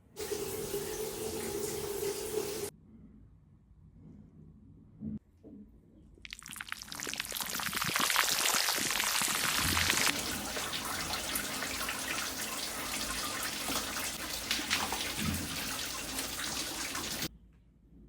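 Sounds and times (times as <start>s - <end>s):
water running from a tap: 0.2s - 2.7s, 6.3s - 17.3s.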